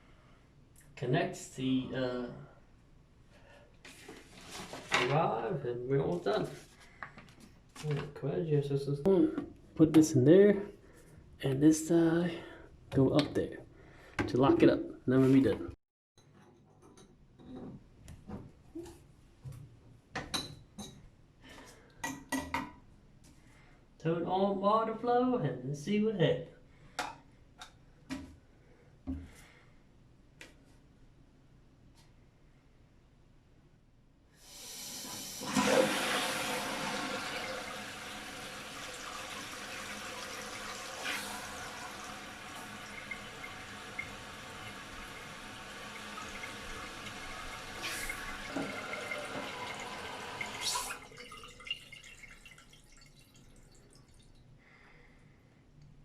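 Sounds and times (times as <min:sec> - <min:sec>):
hiss of toilet tank filling: 0:34.4 - 0:51.2
water gushing into toilet: 0:34.4 - 0:54.4.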